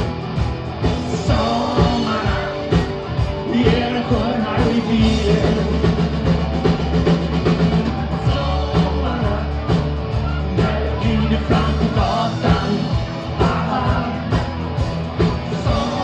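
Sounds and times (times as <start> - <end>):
bass line: 0.0 - 16.0
drum kit: 0.0 - 16.0
rock music: 0.0 - 16.0
person singing: 1.1 - 6.2, 8.0 - 14.6, 15.2 - 16.0.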